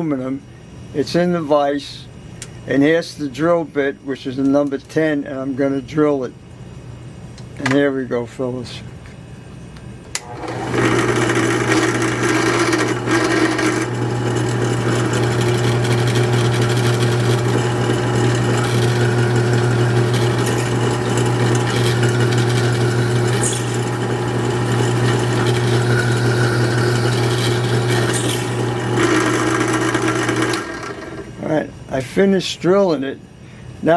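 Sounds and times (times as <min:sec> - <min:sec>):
drill press humming: 0:10.1 - 0:31.5
drill bit drilling aluminum: 0:10.2 - 0:31.4.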